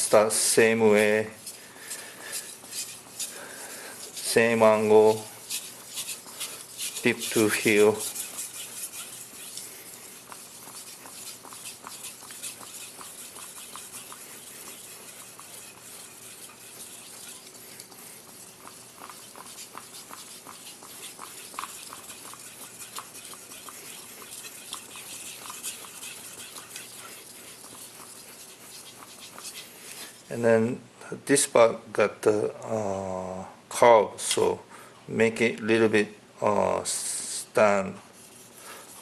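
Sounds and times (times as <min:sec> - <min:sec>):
knife scraping on whetstone: 0:00.0 - 0:30.3.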